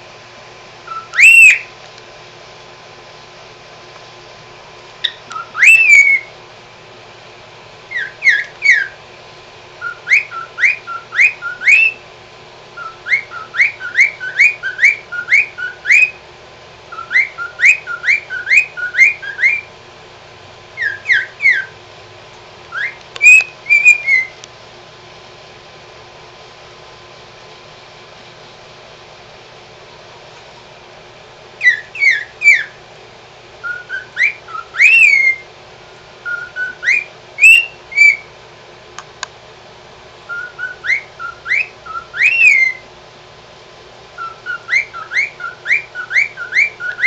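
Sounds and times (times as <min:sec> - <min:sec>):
cockatiel whistling: 0:00.9 - 0:01.7, 0:05.0 - 0:06.3, 0:07.9 - 0:09.0, 0:09.8 - 0:12.0, 0:12.8 - 0:16.2, 0:16.9 - 0:19.7, 0:20.8 - 0:21.8, 0:22.7 - 0:24.4, 0:31.6 - 0:32.8, 0:33.6 - 0:35.5, 0:36.2 - 0:38.3, 0:40.3 - 0:42.8, 0:44.2 - 0:47.0.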